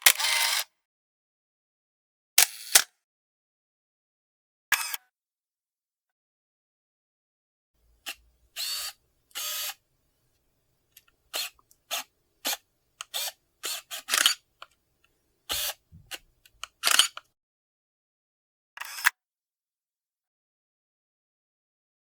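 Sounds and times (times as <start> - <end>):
camera shutter clicks: 0.0 - 0.6, 2.4 - 2.9, 8.1 - 9.8, 11.3 - 14.4, 15.5 - 17.2, 18.8 - 19.1.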